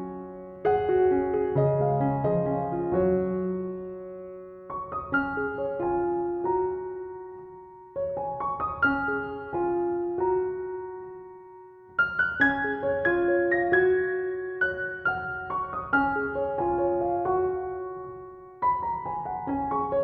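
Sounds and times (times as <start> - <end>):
gentle piano music: 0.0 - 20.0.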